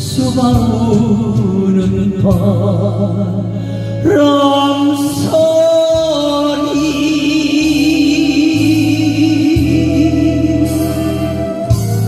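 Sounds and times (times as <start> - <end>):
person singing long wavering notes: 0.0 - 12.0
band accompaniment: 7.6 - 12.0.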